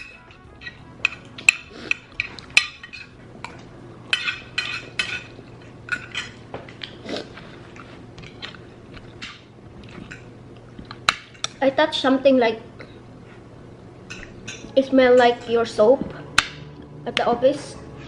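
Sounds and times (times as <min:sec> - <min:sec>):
cutlery clinking on plate: 0:00.0 - 0:06.9.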